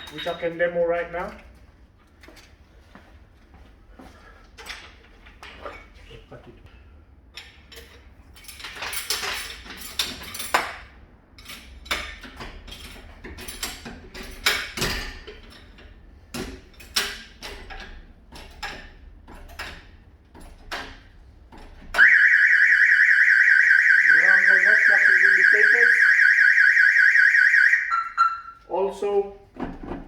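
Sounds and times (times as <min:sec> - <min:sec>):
fast-warbling alarm siren: 0:22.0 - 0:28.6.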